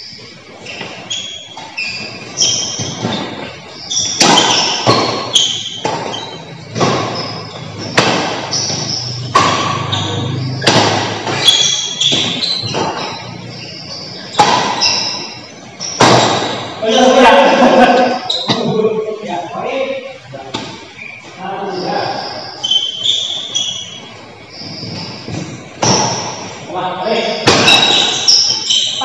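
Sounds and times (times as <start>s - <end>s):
shoe squeaks: 0.0s - 19.1s, 20.0s - 29.0s
rackets striking shuttlecock: 4.0s - 13.2s, 14.2s - 16.7s, 24.6s - 26.5s, 27.4s - 29.0s.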